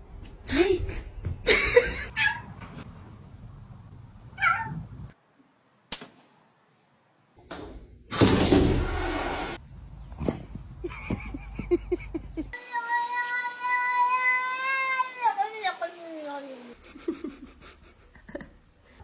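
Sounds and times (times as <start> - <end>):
cat meowing: 4.4 - 4.8, 12.8 - 15.3.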